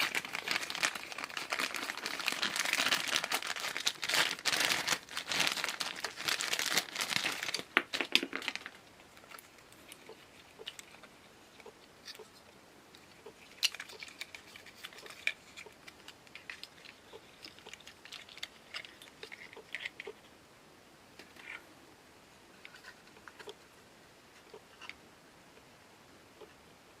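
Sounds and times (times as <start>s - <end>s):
lantern parts clicking and scraping: 7.1s - 20.3s, 22.5s - 25.0s.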